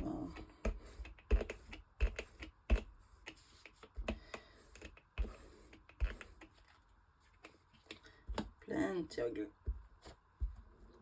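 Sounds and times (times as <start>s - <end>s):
glue stick knocking on paper: 0.2s - 6.5s.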